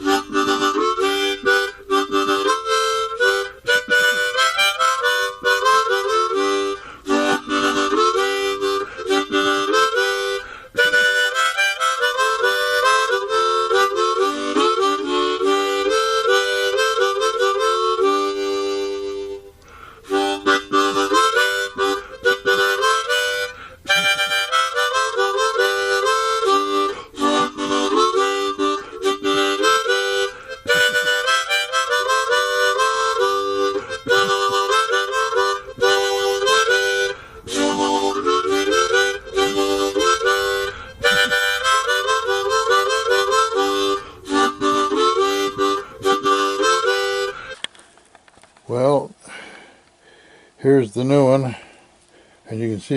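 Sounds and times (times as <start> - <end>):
harmonica melody: 0.0 - 47.9.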